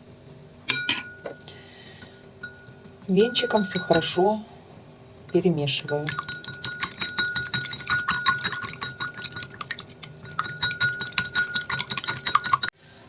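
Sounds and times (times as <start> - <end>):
wire whisk clicking in a bowl: 6.0 - 12.7.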